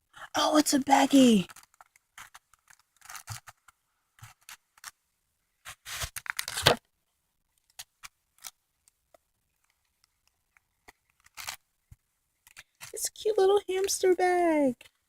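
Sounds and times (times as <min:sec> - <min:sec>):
plastic packaging crinkling: 0:01.4 - 0:05.0, 0:05.6 - 0:06.8, 0:07.6 - 0:11.6.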